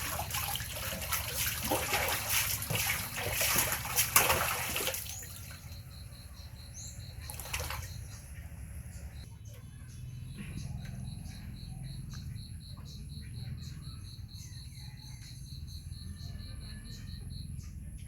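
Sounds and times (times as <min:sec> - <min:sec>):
bathwater splashing: 0:00.0 - 0:05.9, 0:07.1 - 0:08.3.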